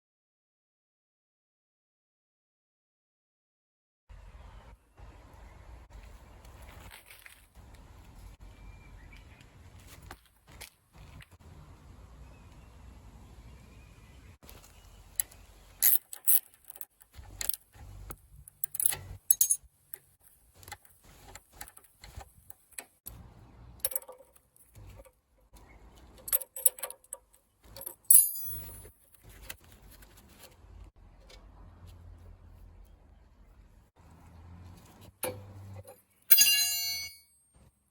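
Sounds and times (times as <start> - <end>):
tools clinking on metal parts: 15.2 - 17.7, 18.5 - 20.1, 26.2 - 28.9, 35.2 - 37.3.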